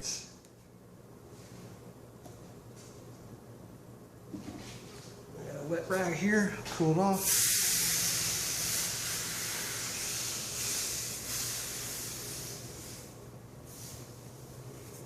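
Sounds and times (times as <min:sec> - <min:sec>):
steam hissing: 0:07.2 - 0:14.1.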